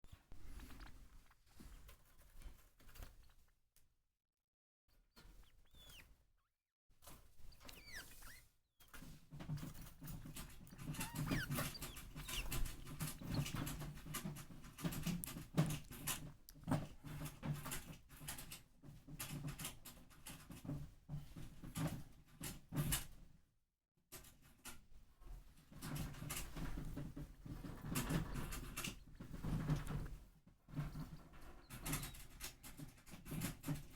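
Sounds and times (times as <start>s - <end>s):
degu squeaking: 5.2s - 6.2s, 7.4s - 14.3s, 28.0s - 30.2s, 30.8s - 32.4s.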